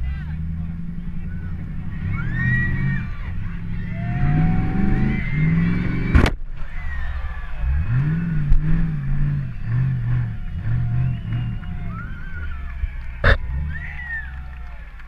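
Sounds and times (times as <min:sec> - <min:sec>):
car engine revving: 0:00.0 - 0:15.0
loud car crash: 0:05.1 - 0:07.6.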